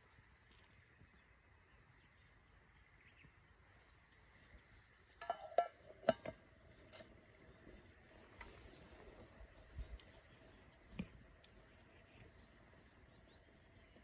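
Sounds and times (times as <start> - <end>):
metal cookware clinking: 5.2 - 7.1.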